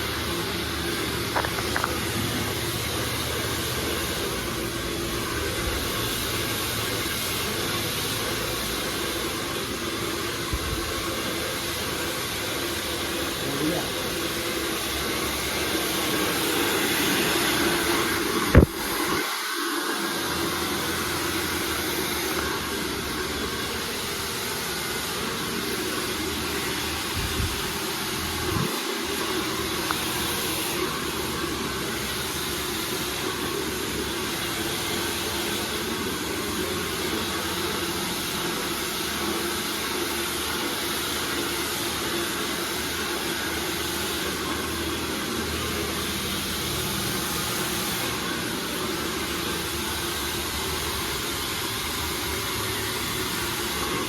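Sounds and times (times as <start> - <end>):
hair dryer blowing air: 0.0 - 54.0.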